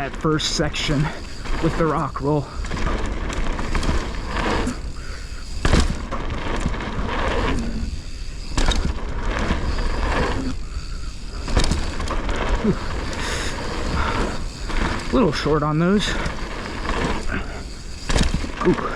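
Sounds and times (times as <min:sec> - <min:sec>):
tyres rumbling over dirt: 0:00.0 - 0:18.9
bike landing thuds: 0:02.5 - 0:15.1, 0:16.2 - 0:18.6.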